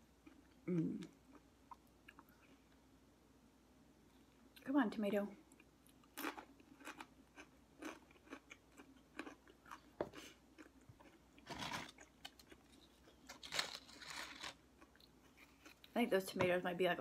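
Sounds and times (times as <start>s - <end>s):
crunching and chewing: 5.6s - 16.0s.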